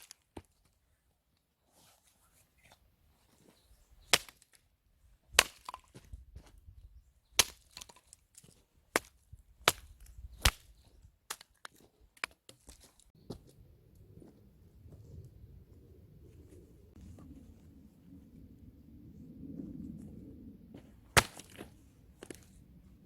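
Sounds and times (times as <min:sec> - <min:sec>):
axe blows splitting wood: 0:05.3 - 0:05.8, 0:21.2 - 0:21.7.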